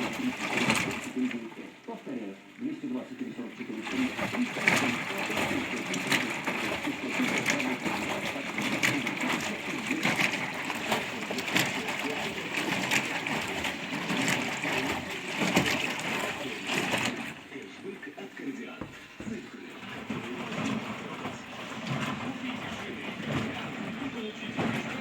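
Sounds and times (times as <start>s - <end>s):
washing machine water sloshing: 0.0s - 25.0s
washing machine knocks: 18.8s - 25.0s.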